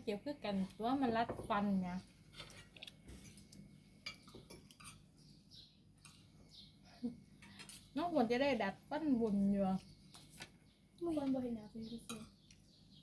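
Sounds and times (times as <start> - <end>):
cutlery clinking on plates: 2.4 - 5.1.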